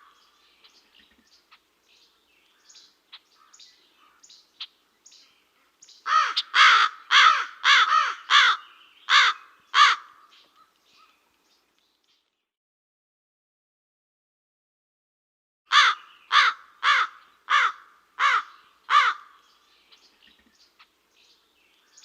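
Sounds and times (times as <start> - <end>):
crow cawing: 3.4 - 4.2, 6.1 - 10.3, 15.7 - 19.4.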